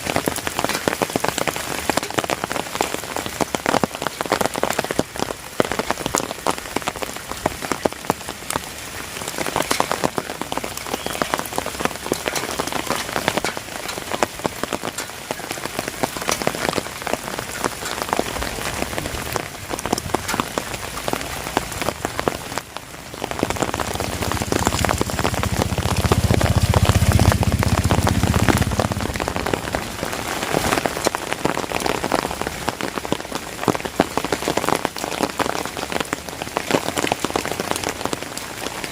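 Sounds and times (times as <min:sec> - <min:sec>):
heavy rain falling: 0:00.0 - 0:38.9
low rumble: 0:18.2 - 0:30.5.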